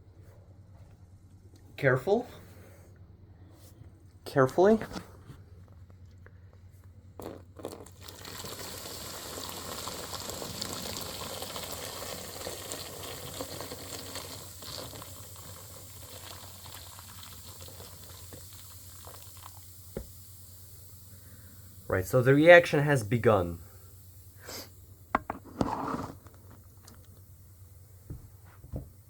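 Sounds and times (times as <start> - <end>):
water poured and fizzing: 7.2 - 20.4.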